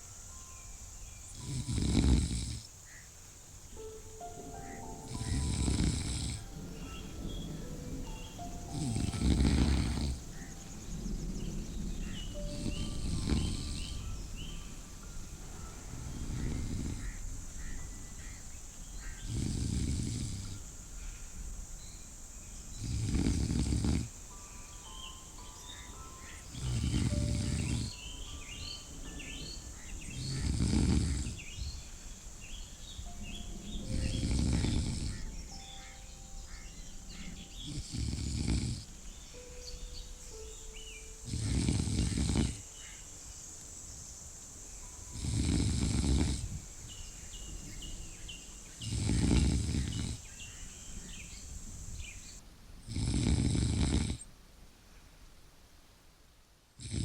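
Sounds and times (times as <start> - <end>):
person snoring: 1.3 - 2.7, 5.1 - 6.4, 8.6 - 10.4, 12.4 - 14.0, 16.3 - 17.0, 19.2 - 20.6, 22.8 - 24.1, 26.5 - 28.0, 30.2 - 31.5, 33.9 - 35.2, 37.6 - 38.9, 41.2 - 42.6, 45.2 - 46.6, 48.9 - 50.2, 52.9 - 54.2, 56.8 - 57.0.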